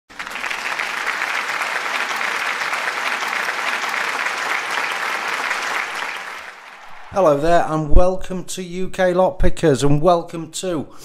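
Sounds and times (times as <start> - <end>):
crowd applauding: 0.1 - 8.1.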